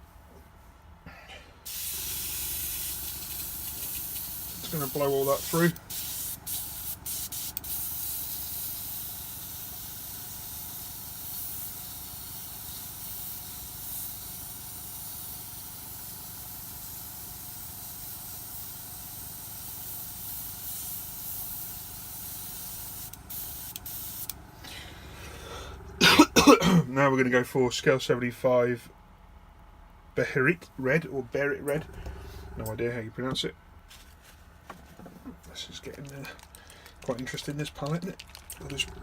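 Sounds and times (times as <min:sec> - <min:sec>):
airbrush hissing: 0:01.7 - 0:24.4.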